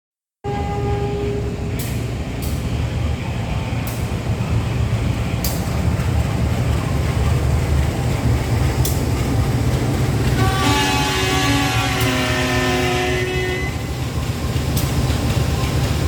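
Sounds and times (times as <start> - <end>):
locomotive horn: 0.4 - 1.7, 10.3 - 13.8
locomotive engine rumble: 0.5 - 16.0.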